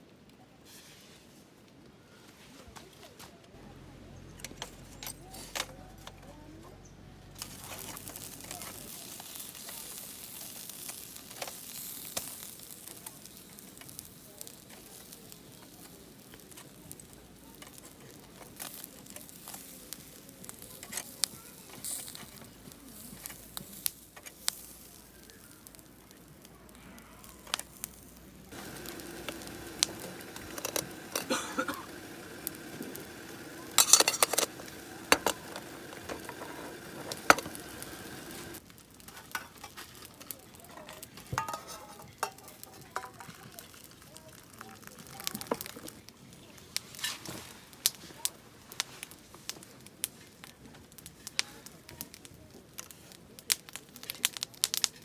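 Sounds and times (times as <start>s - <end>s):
food sizzling in a pan: 7.4s - 45.7s
sharp pops and crackles: 7.4s - 55.0s.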